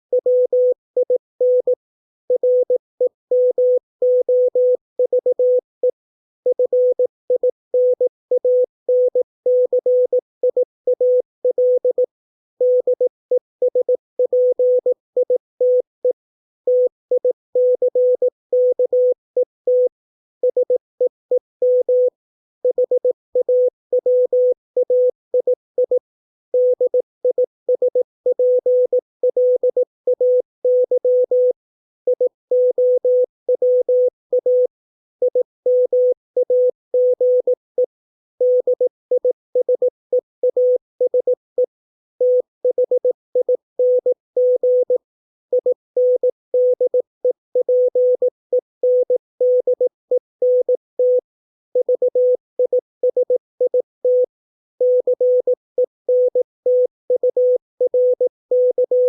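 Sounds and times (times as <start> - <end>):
morse code beeps: 26.6 - 34.7, 35.3 - 51.2, 51.8 - 59.0.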